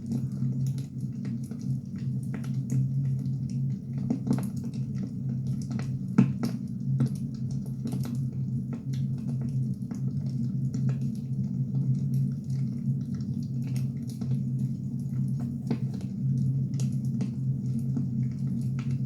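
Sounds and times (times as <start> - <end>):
steady low hum: 14.0 - 19.0.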